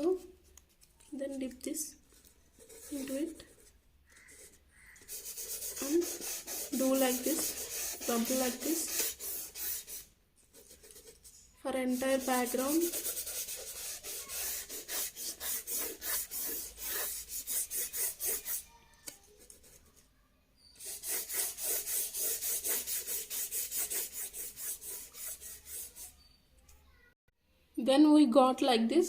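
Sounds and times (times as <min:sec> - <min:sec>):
paper rubbing on paper: 0:02.6 - 0:18.7, 0:20.8 - 0:26.2.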